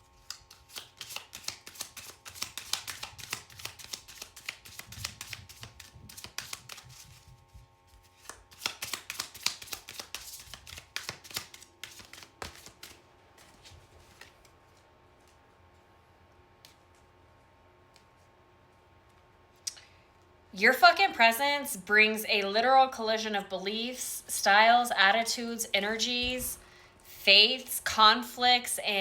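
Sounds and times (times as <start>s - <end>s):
cards shuffled by hand: 0.0s - 15.4s.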